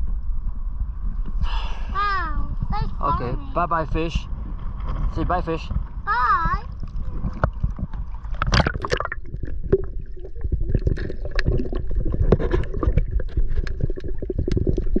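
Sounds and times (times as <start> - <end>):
low steady rumble: 0.0 - 15.0
water sloshing against kayak hull: 5.7 - 14.2.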